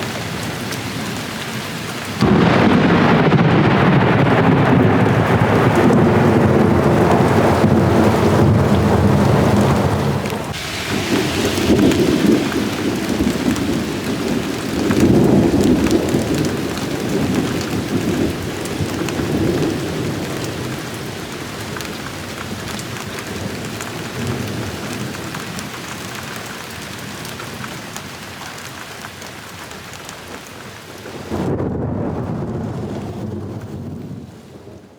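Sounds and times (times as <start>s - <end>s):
heavy rain pouring: 0.0s - 34.9s
rolling thunder: 2.2s - 25.6s, 31.0s - 34.9s.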